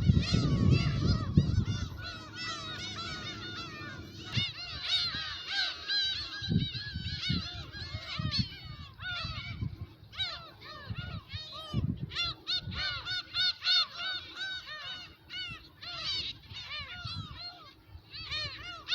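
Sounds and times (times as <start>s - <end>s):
wind buffeting microphone: 0.0s - 13.1s
flock of gulls calling: 0.0s - 18.9s.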